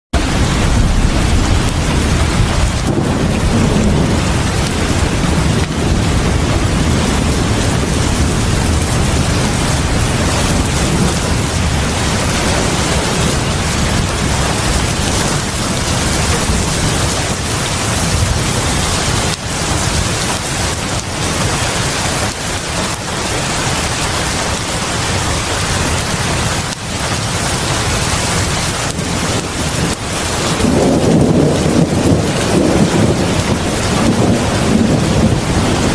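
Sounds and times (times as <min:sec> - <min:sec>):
heavy rain on a porch: 0:00.1 - 0:35.9
deep rumble: 0:00.2 - 0:35.9.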